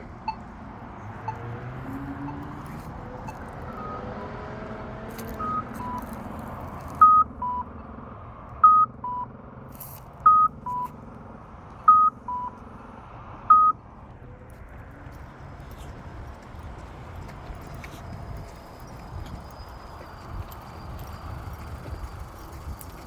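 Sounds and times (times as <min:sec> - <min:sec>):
two-note pedestrian signal beeps: 0:00.2 - 0:00.5, 0:01.2 - 0:04.3, 0:05.3 - 0:06.1, 0:07.0 - 0:07.8, 0:08.6 - 0:09.3, 0:10.3 - 0:11.0, 0:11.9 - 0:12.6, 0:13.5 - 0:13.8.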